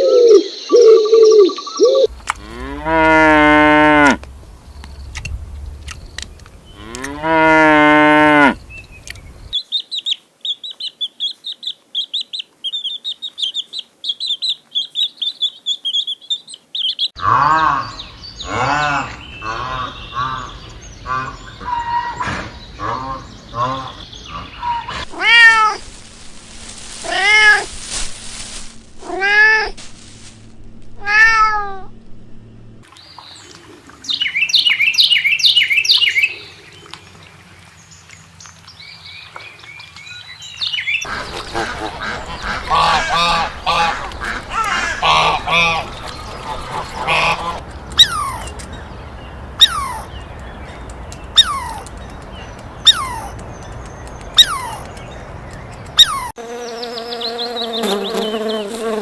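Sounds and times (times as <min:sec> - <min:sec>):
cat meowing: 0:25.1 - 0:25.8, 0:27.0 - 0:27.7, 0:29.0 - 0:29.8, 0:31.0 - 0:31.9
high animal chirping: 0:41.0 - 0:48.6, 0:49.6 - 0:50.3, 0:51.3 - 0:52.0, 0:52.8 - 0:53.4, 0:54.4 - 0:54.9, 0:56.0 - 0:58.9.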